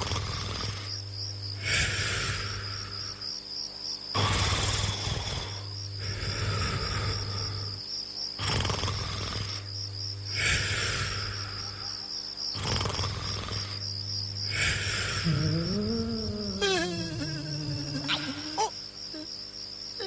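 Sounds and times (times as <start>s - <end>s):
person snoring: 0.0s - 1.0s, 1.6s - 3.2s, 4.2s - 7.8s, 8.4s - 9.7s, 10.3s - 12.0s, 12.6s - 13.8s, 14.5s - 19.3s
crickets trilling: 0.0s - 20.0s.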